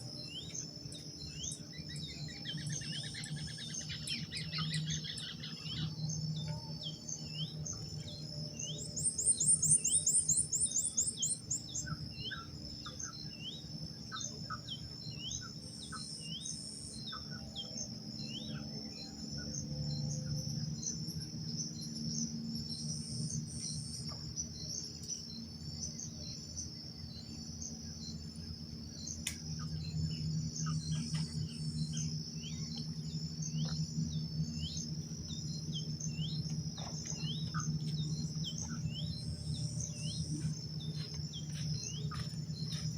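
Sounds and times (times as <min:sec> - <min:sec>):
high insect drone: 0:00.0 - 0:42.9
low steady hum: 0:00.0 - 0:42.9
birds chirping: 0:00.2 - 0:18.6, 0:27.6 - 0:42.9.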